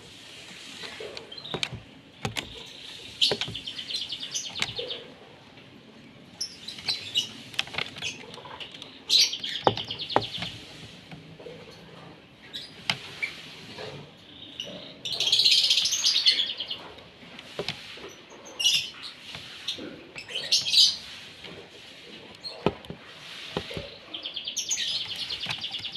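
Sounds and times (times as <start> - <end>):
starling chattering and calling: 0.6 - 5.2
sharp clicks: 3.2 - 4.9.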